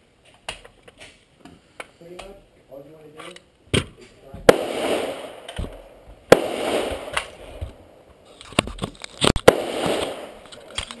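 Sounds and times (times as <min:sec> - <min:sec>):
faint sharp cracks: 0:04.0 - 0:07.8, 0:08.4 - 0:11.0
rifle shots echoing: 0:04.5 - 0:08.1, 0:09.4 - 0:11.0.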